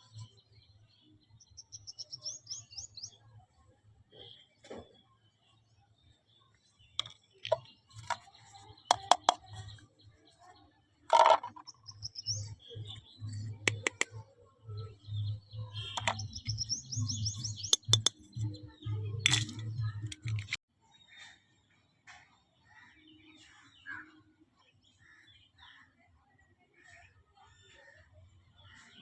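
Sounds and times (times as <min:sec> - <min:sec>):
plastic toy pieces clicking: 0:08.9 - 0:09.5, 0:11.1 - 0:11.7, 0:17.8 - 0:18.2, 0:19.3 - 0:20.6.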